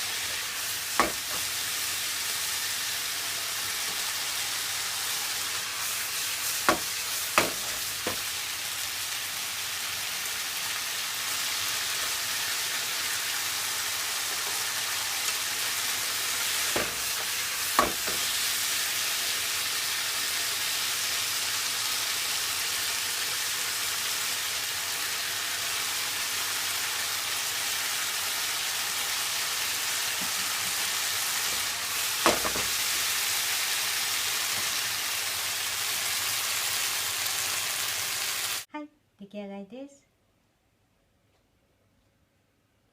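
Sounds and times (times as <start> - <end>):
food sizzling in a frying pan: 0.0 - 38.7
utensil knocking against pan: 1.0 - 1.5, 6.7 - 8.2, 16.7 - 18.3, 32.2 - 32.8.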